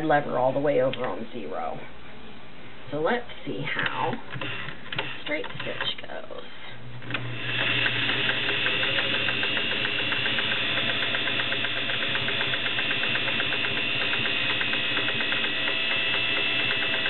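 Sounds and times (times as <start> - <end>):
sewing machine running: 4.3 - 5.9, 7.0 - 17.0.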